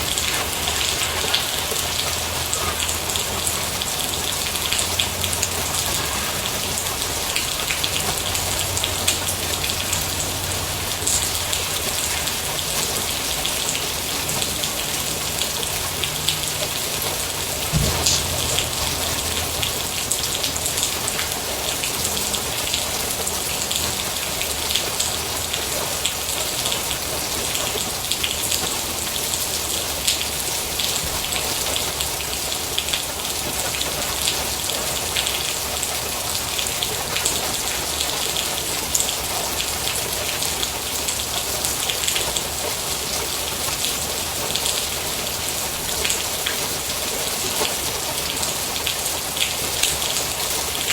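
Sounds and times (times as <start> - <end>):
steady rain falling: 0.0 - 50.9
low thump: 17.7 - 20.2.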